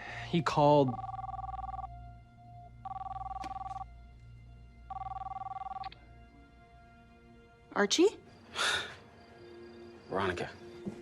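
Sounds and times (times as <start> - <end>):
telephone ringing: 0.8 - 2.0, 2.8 - 3.9, 4.9 - 5.9.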